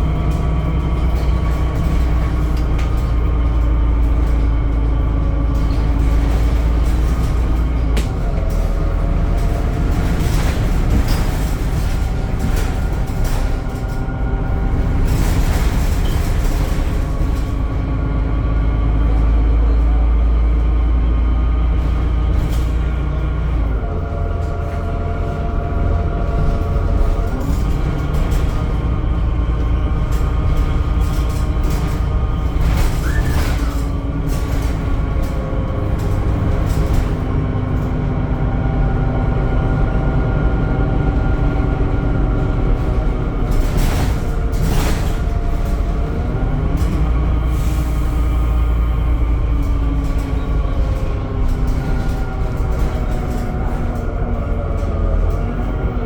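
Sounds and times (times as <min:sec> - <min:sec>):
bus engine rumble: 0:00.0 - 0:56.0
gearbox whining: 0:23.3 - 0:38.4.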